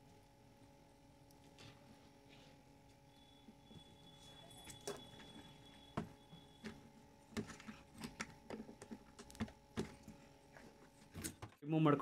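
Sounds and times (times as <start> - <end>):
faint high whine: 0.0 - 8.7.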